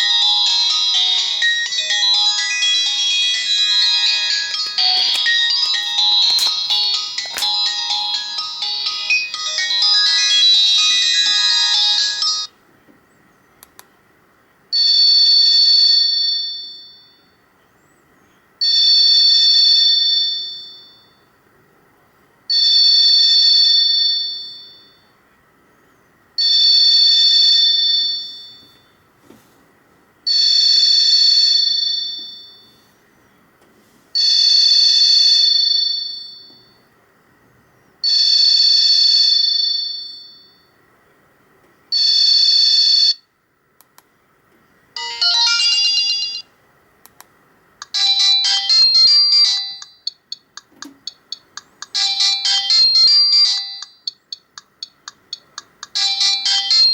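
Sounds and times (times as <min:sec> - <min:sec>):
melodic phone ringtone: 0:00.0 - 0:12.5, 0:14.8 - 0:17.3, 0:18.6 - 0:21.2, 0:23.9 - 0:25.1, 0:26.4 - 0:28.8, 0:30.3 - 0:32.8, 0:34.2 - 0:36.8, 0:45.0 - 0:46.5, 0:47.8 - 0:50.5, 0:51.1 - 0:56.9.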